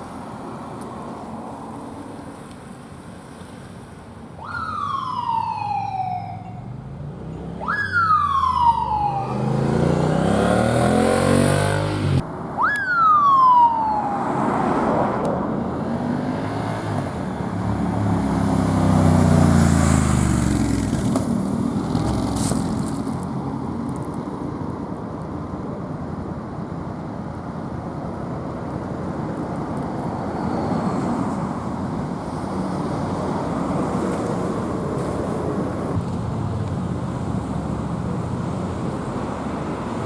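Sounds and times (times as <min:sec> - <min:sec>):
motorcycle siren blasts: 0:04.4 - 0:06.7, 0:07.6 - 0:14.5
engine revving: 0:07.2 - 0:12.2.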